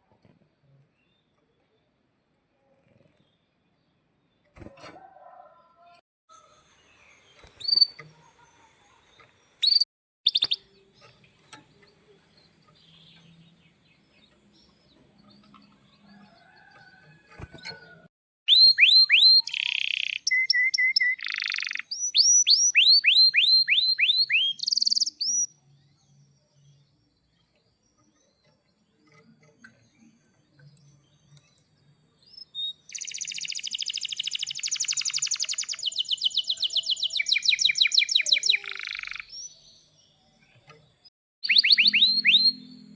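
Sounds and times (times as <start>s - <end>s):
canary singing: 7.4s - 8.2s, 9.6s - 17.9s, 18.5s - 26.9s, 32.2s - 40.2s, 41.4s - 42.9s.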